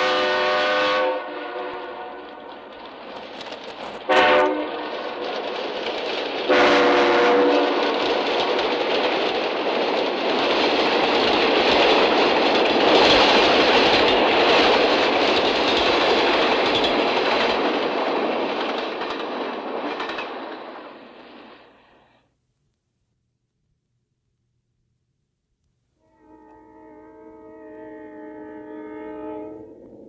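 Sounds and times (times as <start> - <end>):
diesel train passing fast: 0.0 - 22.2, 26.2 - 30.0
wheels clacking over rail joints: 1.8 - 21.8.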